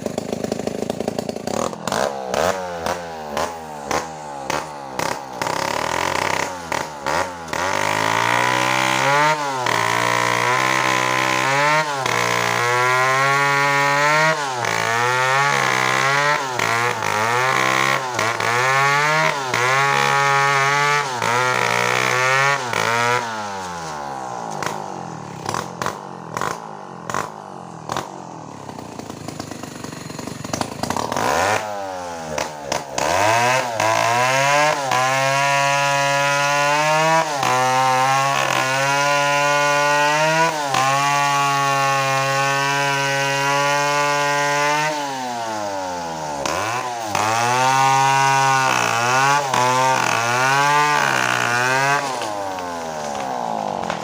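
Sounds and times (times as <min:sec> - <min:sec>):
chainsaw cutting wood: 0:00.0 - 0:54.0
chainsaw engine revving: 0:00.0 - 0:54.0.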